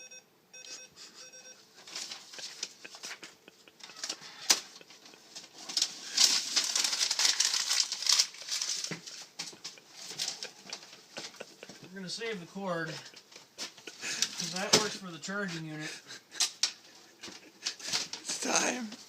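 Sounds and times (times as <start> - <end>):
fax machine beeps: 0.0 - 1.7
paper crinkling and rustling: 1.8 - 11.8, 12.9 - 15.1.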